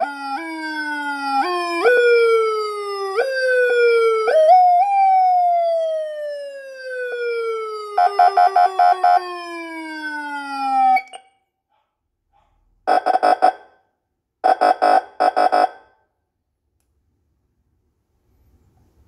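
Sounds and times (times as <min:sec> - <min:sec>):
police siren gliding down: 0:00.0 - 0:11.3
rapid pulsing siren tone: 0:06.9 - 0:11.2.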